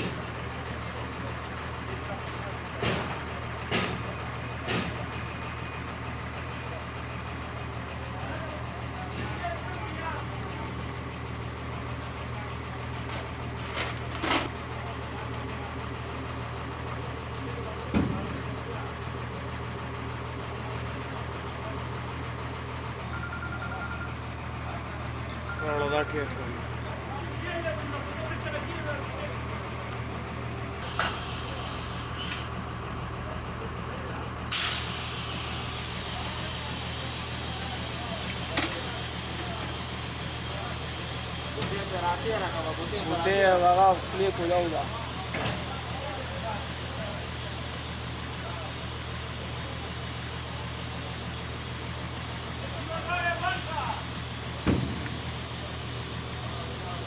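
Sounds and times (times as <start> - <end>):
engine idling: 0.0 - 57.0
short hissing noises: 30.8 - 32.6, 34.5 - 37.4.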